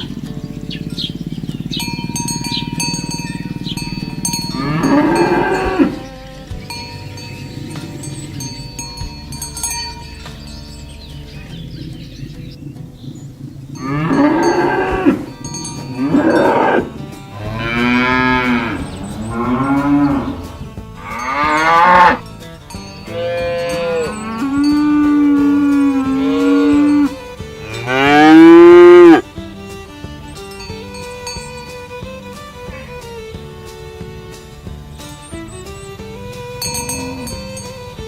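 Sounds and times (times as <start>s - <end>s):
cattle mooing: 0.0s - 9.1s, 12.2s - 29.3s, 36.8s - 38.0s.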